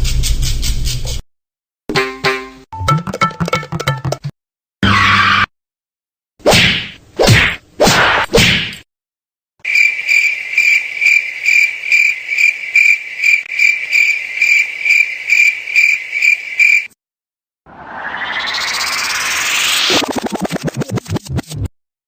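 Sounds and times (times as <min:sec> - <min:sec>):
crickets chirping: 0:09.6 - 0:16.9.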